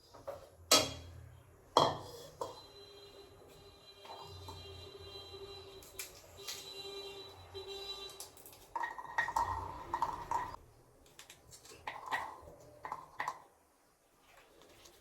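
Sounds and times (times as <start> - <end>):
dishes and utensils clinking: 0.1 - 1.2, 1.8 - 2.6, 8.2 - 10.6.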